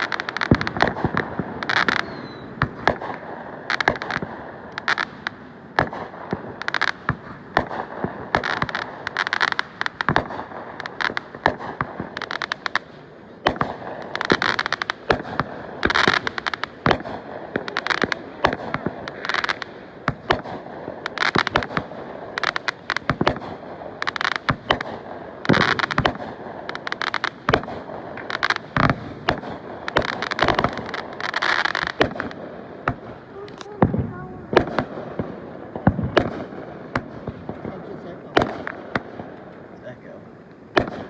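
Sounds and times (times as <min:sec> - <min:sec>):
fireworks bangs: 0:00.0 - 0:41.0
fireworks crackling: 0:00.0 - 0:41.0.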